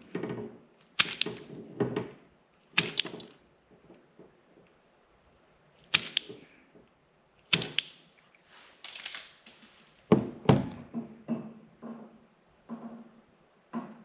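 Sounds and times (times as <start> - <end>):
hand tool clicks and snaps: 0.8 - 1.5, 2.8 - 3.4, 5.8 - 6.5, 7.4 - 8.1.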